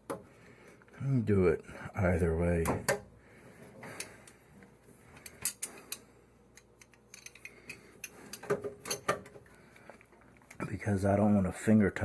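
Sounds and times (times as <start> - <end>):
metal fittings clicking and clinking: 5.2 - 9.2.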